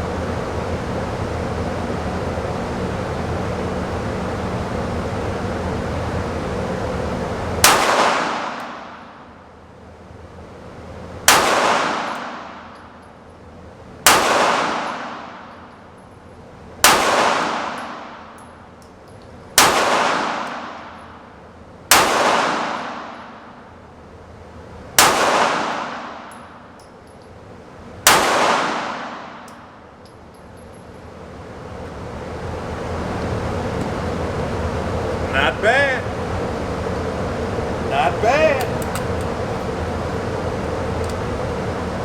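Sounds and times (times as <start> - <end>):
pistol shots with echo: 7.6 - 9.0, 11.3 - 12.6, 14.0 - 15.5, 16.8 - 18.2, 19.6 - 21.0, 21.9 - 23.4, 25.0 - 26.3, 28.0 - 29.4.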